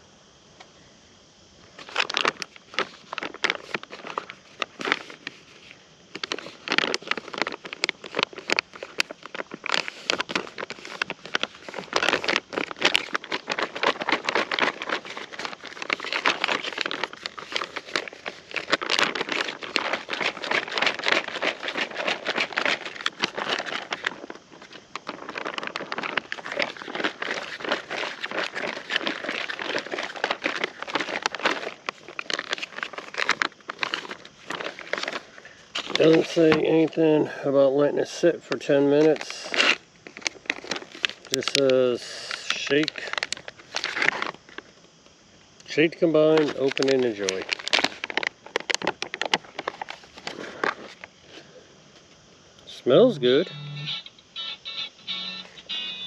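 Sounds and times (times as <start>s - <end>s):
contents sloshing and rattling: 1.8s - 37.2s, 38.5s - 44.7s, 46.1s - 51.1s
pouch crinkling: 1.8s - 37.2s, 38.0s - 44.8s, 45.7s - 51.5s, 52.8s - 56.0s.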